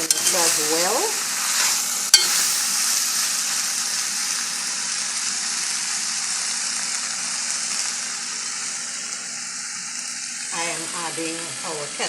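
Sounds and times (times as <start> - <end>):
food sizzling in a pan: 0.0 - 12.0.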